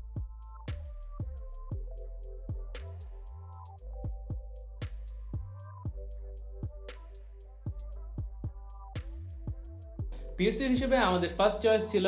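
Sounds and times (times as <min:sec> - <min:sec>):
kick drum: 0:00.0 - 0:01.9, 0:02.5 - 0:02.8, 0:04.0 - 0:06.9, 0:07.7 - 0:10.2
hi-hat ticks: 0:00.0 - 0:12.0.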